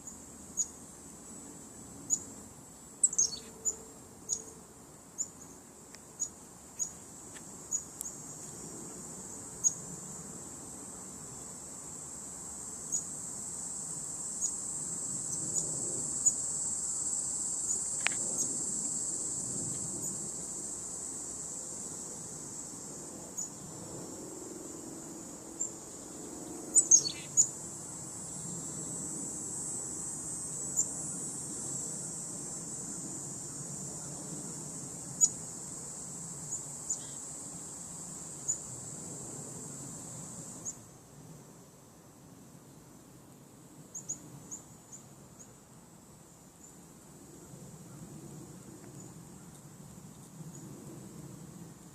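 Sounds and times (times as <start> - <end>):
insects trilling: 0.0 - 41.7, 43.9 - 51.9
bird chirps: 3.0 - 4.4, 26.8 - 27.5.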